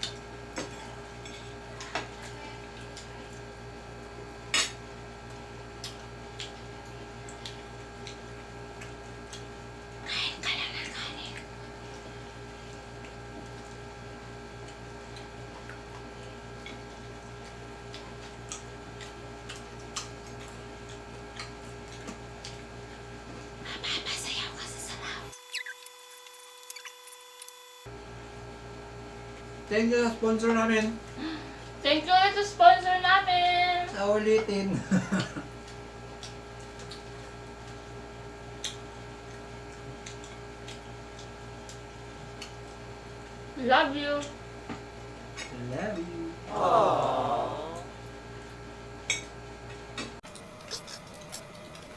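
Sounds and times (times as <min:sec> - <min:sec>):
electrical hum: 0:00.0 - 0:51.9
chewing smacks: 0:05.3 - 0:09.6, 0:11.4 - 0:14.0, 0:14.6 - 0:23.5, 0:35.6 - 0:37.9, 0:38.5 - 0:42.8, 0:50.3 - 0:51.9.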